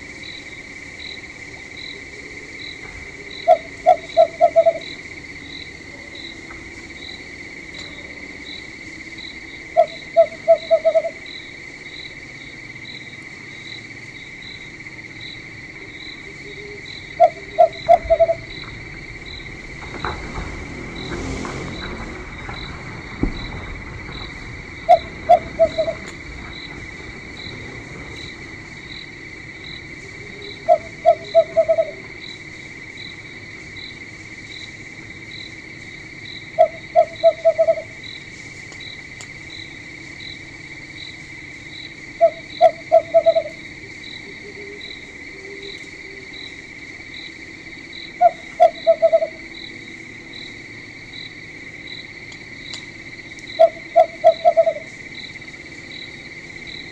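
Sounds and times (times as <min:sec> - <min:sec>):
crickets trilling: 0:00.0 - 0:56.9
high pulsing chirp: 0:16.4 - 0:19.5.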